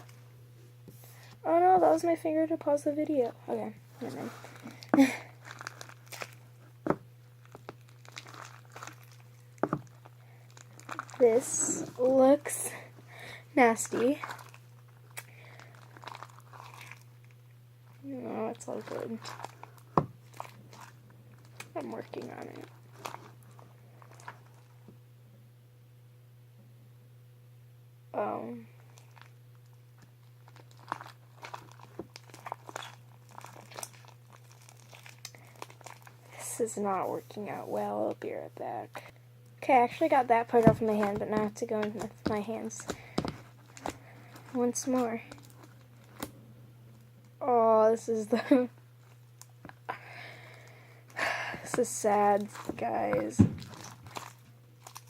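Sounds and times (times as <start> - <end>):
steady low hum: 0.0 - 55.0
slime squished by hand: 7.4 - 12.3, 14.0 - 17.1, 30.4 - 36.2.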